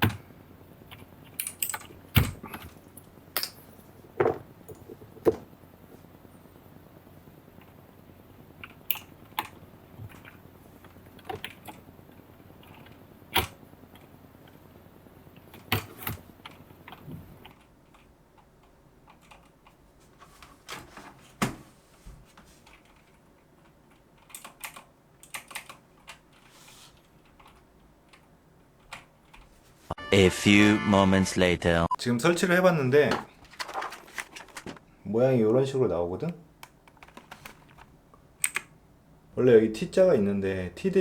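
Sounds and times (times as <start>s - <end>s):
keyboard plastic clicks and taps: 36.2s - 38.7s.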